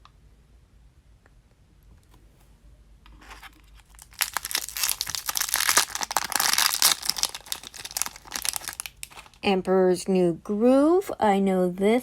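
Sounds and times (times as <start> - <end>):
plastic packaging crinkling and tearing: 3.3 - 9.4.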